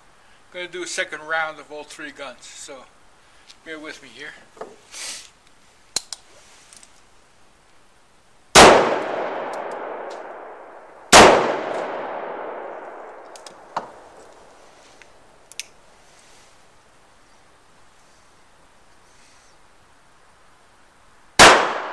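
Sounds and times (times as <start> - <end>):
handgun shots echoing: 8.6 - 14.1, 21.4 - 21.9.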